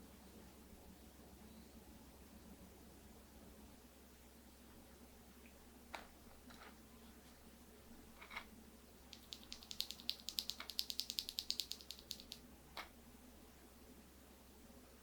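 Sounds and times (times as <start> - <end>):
mechanical keyboard keys clicking: 9.1 - 12.4.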